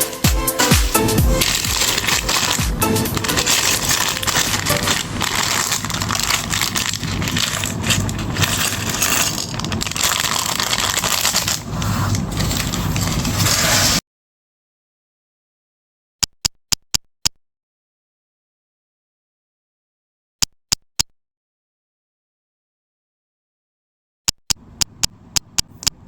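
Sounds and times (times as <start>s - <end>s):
crunching and crackling noise: 0.0s - 14.0s.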